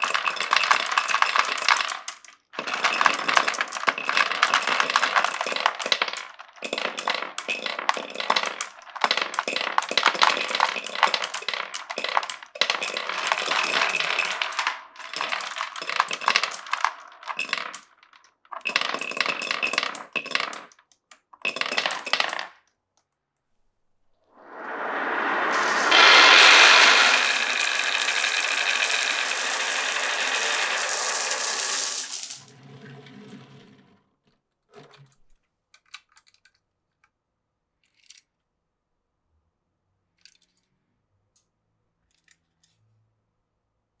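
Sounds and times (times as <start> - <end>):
marbles clattering down wooden run: 0.0 - 20.7, 21.5 - 22.6, 24.5 - 32.5.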